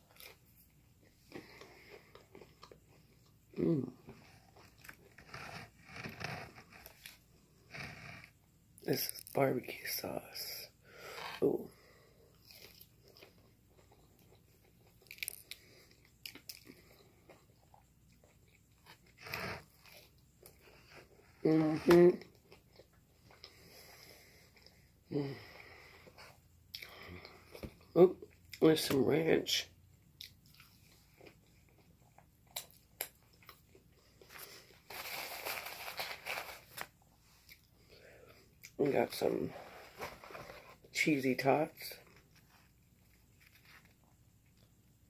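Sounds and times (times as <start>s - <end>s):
chewing crispy food: 0.0s - 7.8s, 12.3s - 21.3s, 22.2s - 24.9s, 29.9s - 38.8s, 41.9s - 45.0s
packaging rustling: 34.4s - 37.0s.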